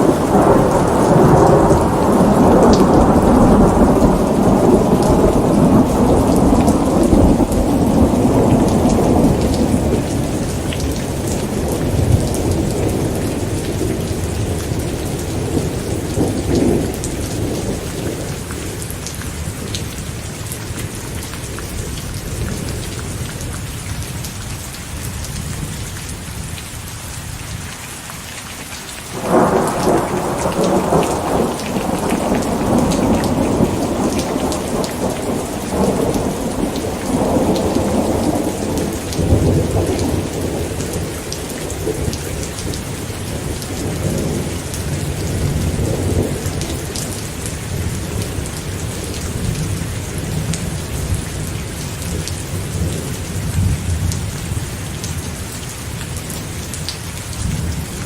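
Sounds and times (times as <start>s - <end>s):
thunder rolling: 0.0s - 18.3s, 29.1s - 51.2s
steady rain: 0.0s - 58.0s.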